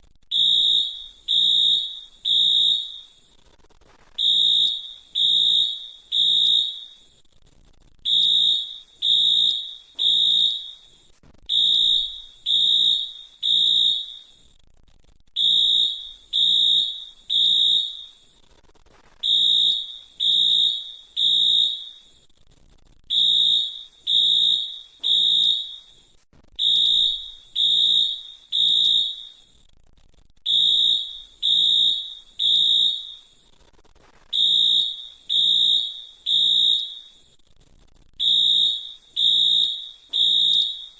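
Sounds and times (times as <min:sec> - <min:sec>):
fire alarm beeping: 0:00.3 - 0:03.3, 0:04.2 - 0:07.1, 0:08.1 - 0:14.4, 0:15.4 - 0:18.3, 0:19.2 - 0:22.2, 0:23.1 - 0:26.0, 0:26.6 - 0:29.6, 0:30.5 - 0:33.4, 0:34.4 - 0:37.4, 0:38.2 - 0:40.9.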